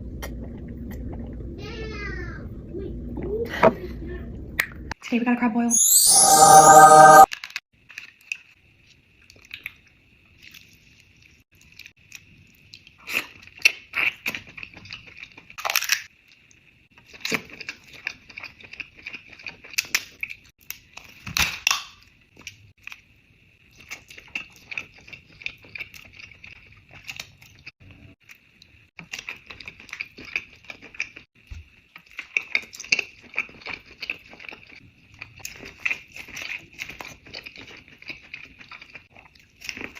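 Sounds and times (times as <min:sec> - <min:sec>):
chewing: 0:11.6 - 0:15.6, 0:17.0 - 0:21.2, 0:23.7 - 0:31.3, 0:31.9 - 0:39.9.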